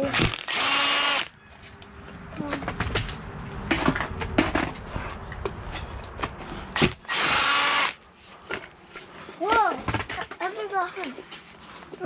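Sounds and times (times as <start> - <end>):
power drill burst: 0.1 - 1.3, 6.8 - 8.0.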